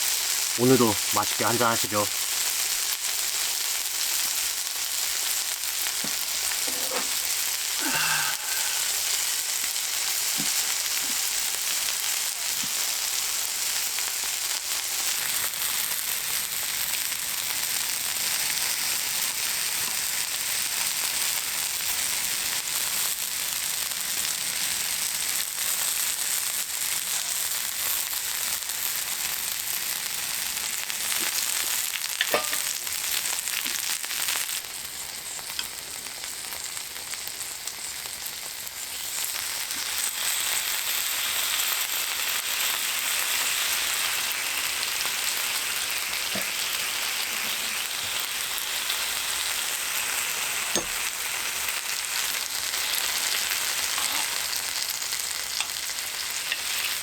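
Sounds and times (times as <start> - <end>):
food sizzling: 0.0 - 57.0.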